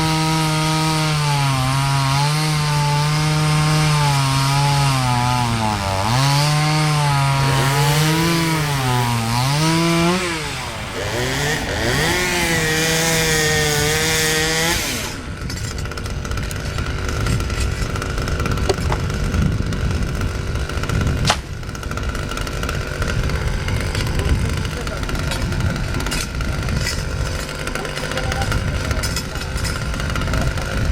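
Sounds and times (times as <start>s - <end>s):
chainsaw cutting at high revs: 0.0s - 30.9s
sharp crack: 20.8s - 30.0s.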